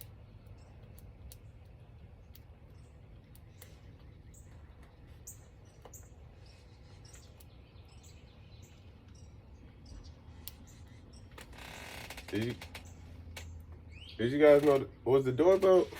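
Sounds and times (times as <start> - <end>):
steady low rumble: 0.0 - 11.6
faint bird chirps: 0.0 - 14.4.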